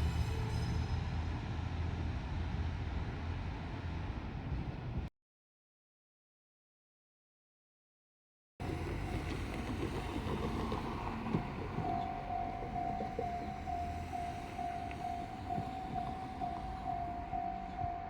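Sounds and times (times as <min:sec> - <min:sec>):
level-crossing alarm ringing: 0:08.6 - 0:18.0.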